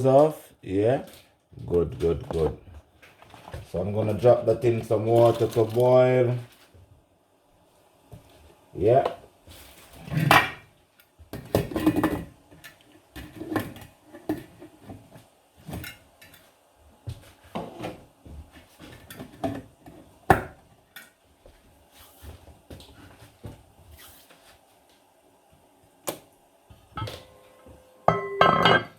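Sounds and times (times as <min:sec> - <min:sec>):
pots and pans clanking: 0:11.5 - 0:12.3, 0:26.8 - 0:28.9.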